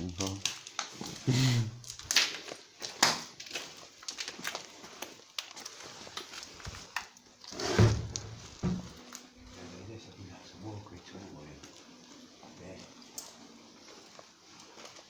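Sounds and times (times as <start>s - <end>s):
small cracks and clicks: 0.0s - 7.5s, 11.4s - 15.0s
footsteps crunching over debris: 0.0s - 15.0s.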